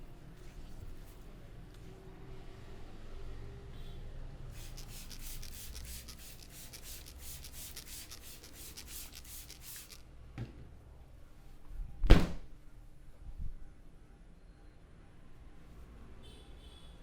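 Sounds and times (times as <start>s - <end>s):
fingers rubbing through hair: 4.6s - 10.0s
loud sharp smack: 12.1s - 12.4s.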